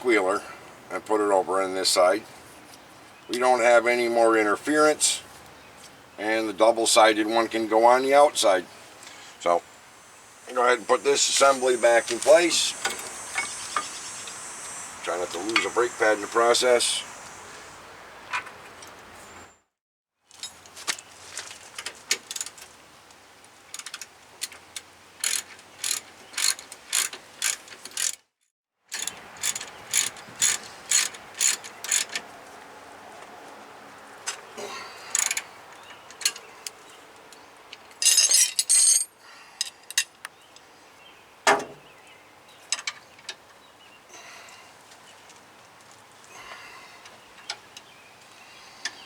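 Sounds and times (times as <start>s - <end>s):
hand ratchet clicking: 25.2s - 28.2s, 28.9s - 32.2s, 35.1s - 35.4s.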